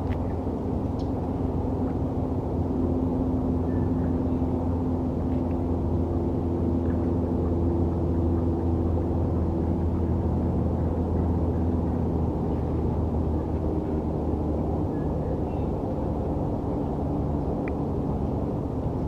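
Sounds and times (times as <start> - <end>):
city traffic rumble: 0.0 - 19.0
steady humming tones: 0.0 - 19.0.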